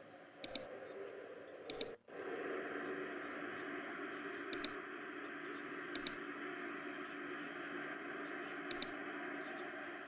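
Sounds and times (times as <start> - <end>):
low hum: 0.0 - 10.0
static-like hiss: 0.0 - 10.0
quick double click: 1.7 - 2.0.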